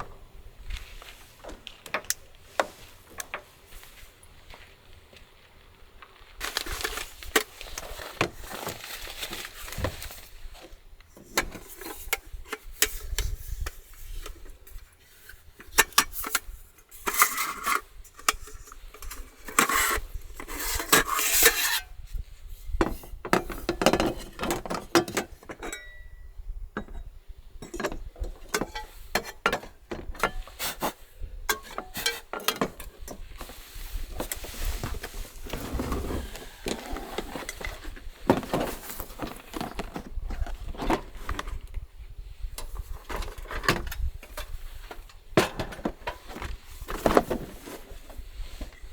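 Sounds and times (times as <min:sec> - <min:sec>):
rustling and scraping: 0:00.0 - 0:25.8, 0:26.8 - 0:48.9
cookware clinking and clattering: 0:24.8 - 0:26.2.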